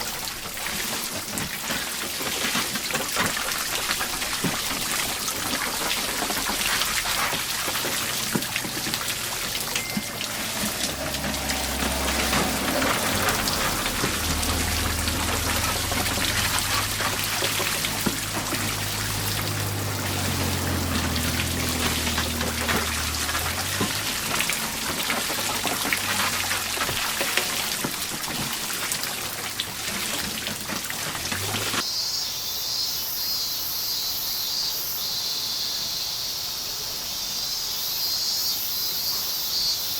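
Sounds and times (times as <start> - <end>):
running water splashing: 0.0 - 31.8
cicadas buzzing: 4.0 - 27.1, 31.2 - 39.9
low hum: 9.0 - 26.8.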